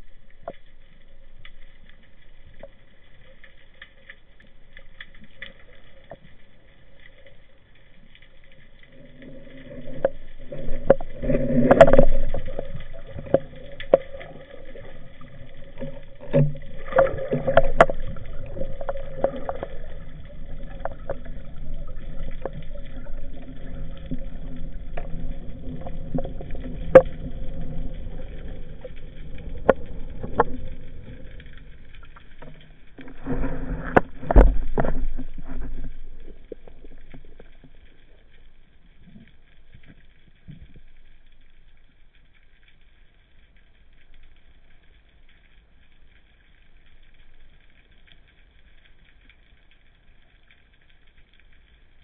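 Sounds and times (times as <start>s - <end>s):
underwater boat engine droning: 8.9s - 38.8s.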